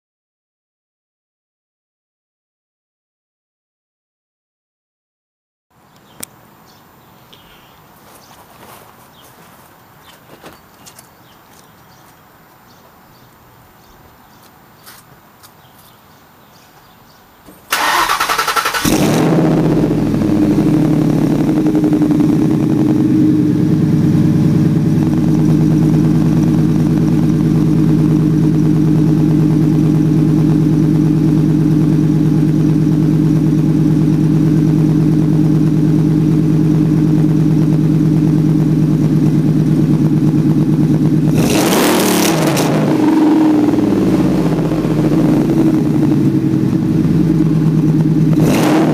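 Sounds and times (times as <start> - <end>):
truck engine idling and revving: 17.5 - 48.9.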